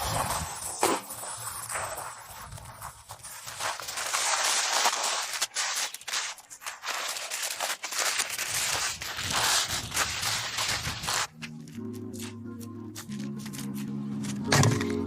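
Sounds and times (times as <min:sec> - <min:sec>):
rushing fire noise: 0:00.0 - 0:11.3
firewood crackling and popping: 0:00.0 - 0:15.0.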